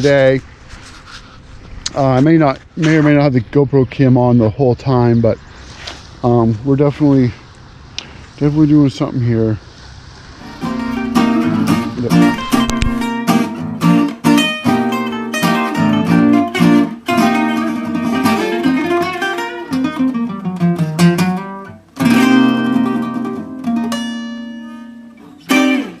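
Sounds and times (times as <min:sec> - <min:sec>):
acoustic guitar strumming: 0:10.4 - 0:26.0.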